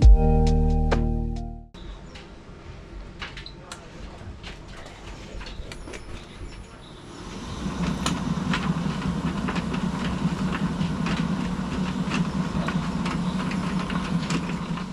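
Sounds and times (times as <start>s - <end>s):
tumble dryer motor hum: 7.2s - 14.9s.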